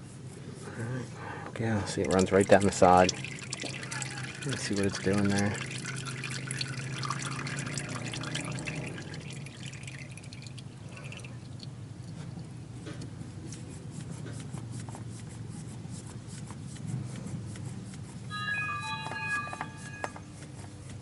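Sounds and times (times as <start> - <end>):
oil trickling and dripping: 1.4 - 13.1.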